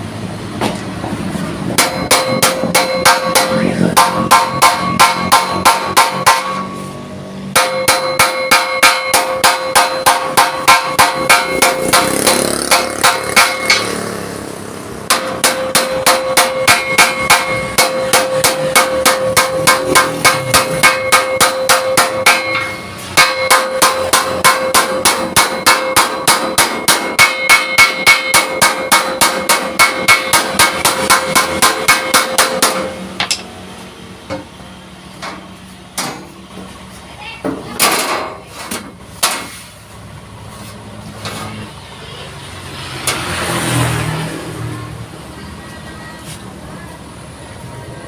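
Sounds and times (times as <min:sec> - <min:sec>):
hammer beating steel sheet: 0:01.6 - 0:33.6, 0:37.7 - 0:39.6.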